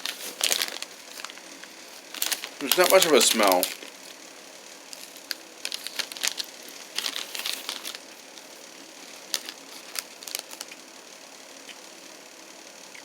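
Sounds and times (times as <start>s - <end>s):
snack wrapper crackling: 0.0s - 4.2s, 4.8s - 10.9s.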